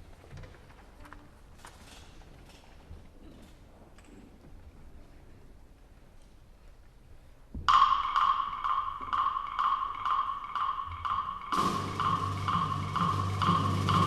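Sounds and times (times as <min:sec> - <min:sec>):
high pitched percussion strikes: 0:07.7 - 0:14.0
low sustained orchestral instruments: 0:09.9 - 0:14.0.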